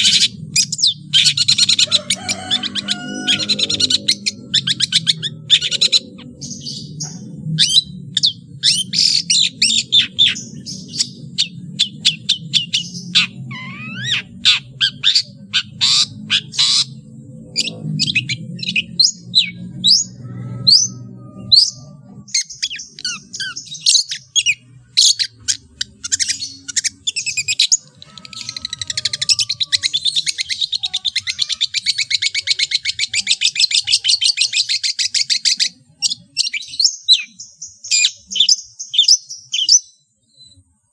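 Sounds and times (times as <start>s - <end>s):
bird song with sharp chirps: 0.0s - 40.9s.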